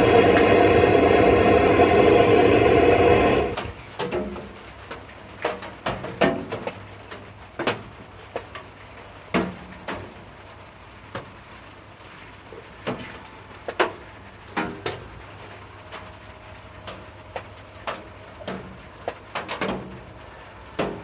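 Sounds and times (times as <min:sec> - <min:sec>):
steady low hum: 0:00.0 - 0:03.9.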